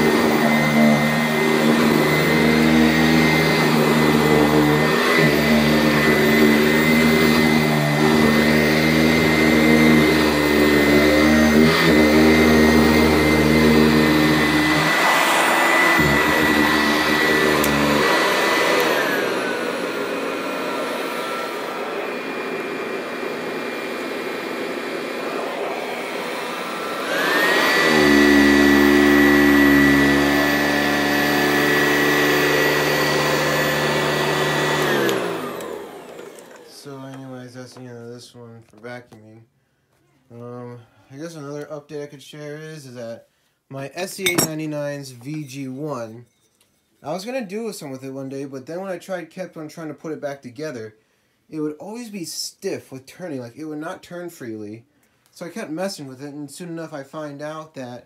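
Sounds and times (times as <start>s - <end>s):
upright vacuum cleaner running: 0.0s - 37.9s, 44.2s - 44.6s.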